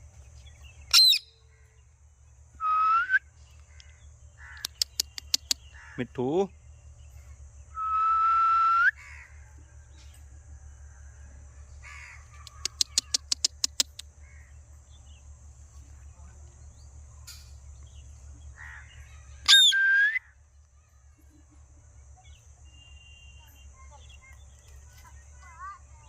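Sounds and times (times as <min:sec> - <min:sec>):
steady low hum: 0:00.0 - 0:26.0
parrot screeching: 0:19.5 - 0:19.8.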